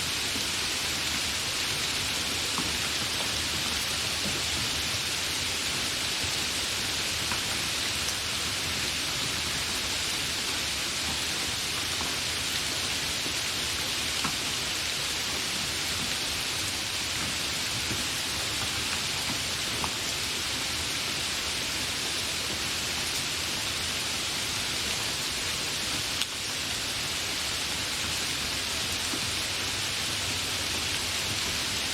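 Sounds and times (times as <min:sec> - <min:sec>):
steady rain falling: 0:00.0 - 0:31.9
raindrop ticks: 0:17.2 - 0:20.1.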